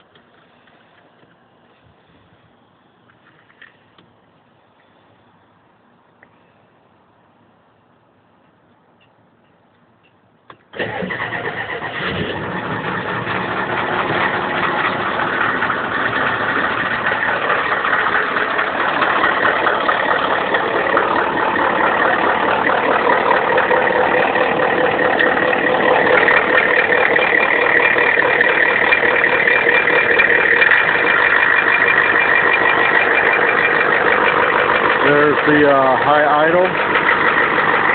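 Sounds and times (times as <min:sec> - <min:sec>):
engine starter click: 0:10.5 - 0:13.2
diesel engine starting and idling: 0:10.5 - 0:37.9.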